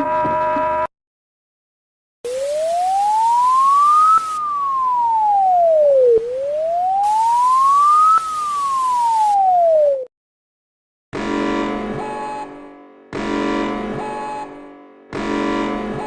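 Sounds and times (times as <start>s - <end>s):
wailing alarm tone: 2.3s - 10.1s
hiss: 7.0s - 9.4s.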